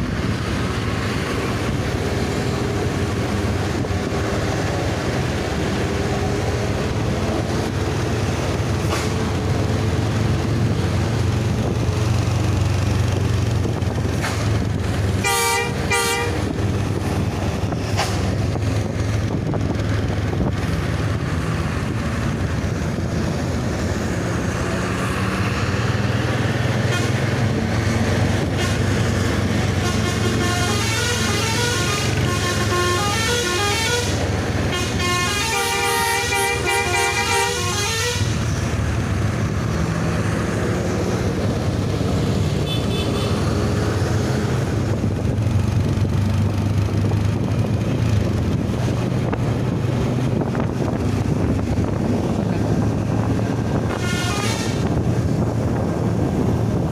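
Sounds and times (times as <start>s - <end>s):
bus engine drone: 0.0s - 56.9s
multi-tone musical horn tune: 15.2s - 16.4s, 29.8s - 38.3s.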